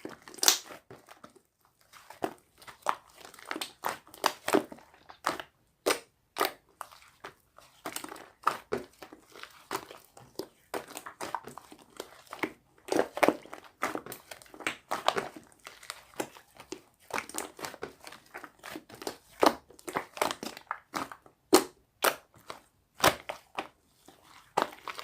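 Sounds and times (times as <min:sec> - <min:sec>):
slime crackling and squishing: 0:00.0 - 0:25.0.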